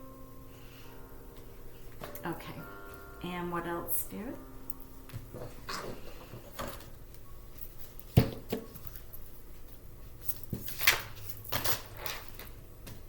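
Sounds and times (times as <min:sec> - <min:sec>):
cards shuffling: 0:10.3 - 0:13.0.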